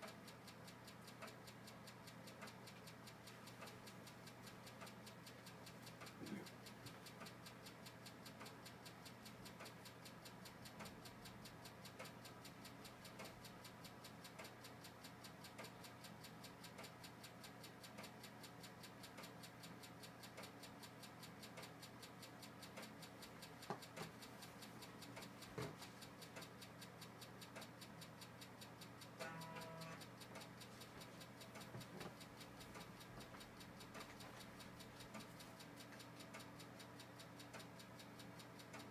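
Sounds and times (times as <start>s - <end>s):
faint fast ticking: 0.0s - 38.9s
computer hum: 22.3s - 38.9s.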